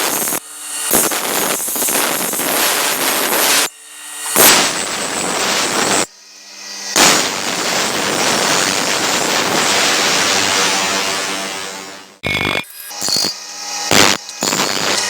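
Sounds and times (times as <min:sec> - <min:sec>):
steel blade grinding: 0:12.2 - 0:15.0.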